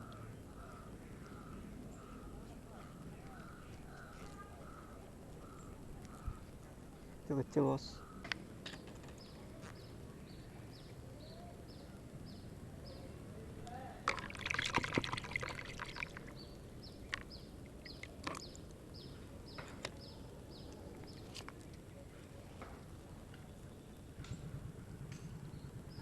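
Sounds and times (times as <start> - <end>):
water splashing and trickling: 13.6 - 19.1.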